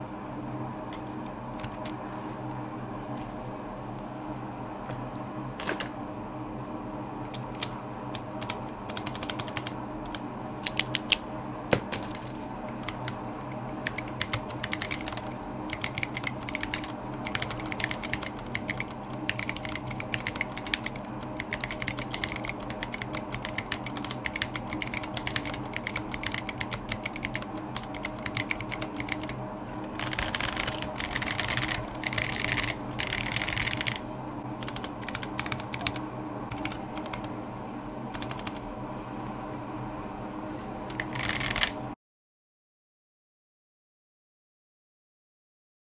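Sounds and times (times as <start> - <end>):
mechanical keyboard typing: 7.3 - 11.2, 13.8 - 34.0, 34.6 - 37.3, 38.1 - 38.7, 40.9 - 41.8.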